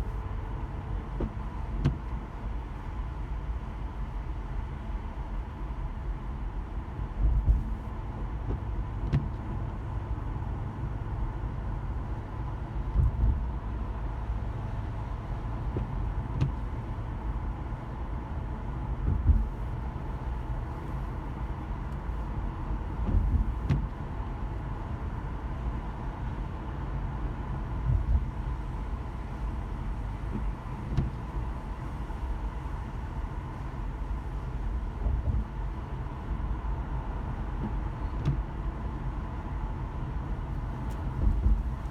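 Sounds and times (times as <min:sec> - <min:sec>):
car engine and tyre rumble: 0:00.0 - 0:41.9
short dull thumps: 0:07.2 - 0:07.9, 0:19.0 - 0:22.3, 0:23.0 - 0:24.0, 0:40.7 - 0:41.9.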